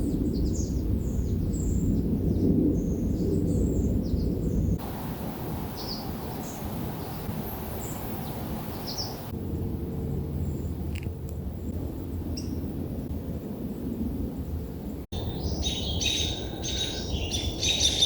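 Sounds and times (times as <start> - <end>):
small birds chirping: 0.0 - 9.4, 13.7 - 18.0
even hiss: 4.8 - 9.3.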